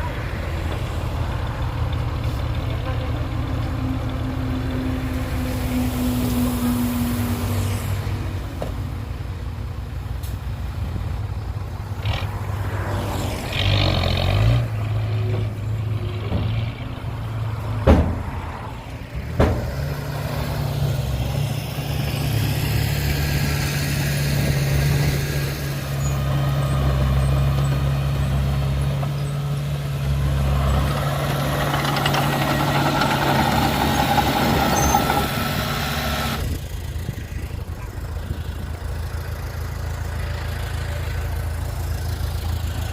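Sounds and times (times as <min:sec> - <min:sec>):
heavy diesel engines running: 0:00.0 - 0:42.9
sharp knocks: 0:17.8 - 0:18.4, 0:19.3 - 0:19.8.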